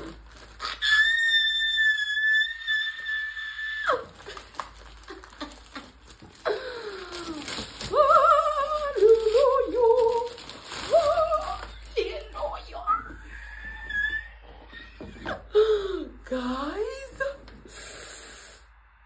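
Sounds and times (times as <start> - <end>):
woman squealing: 0.0 - 5.8, 12.8 - 15.6
package handling clicks and rustling: 4.1 - 12.6.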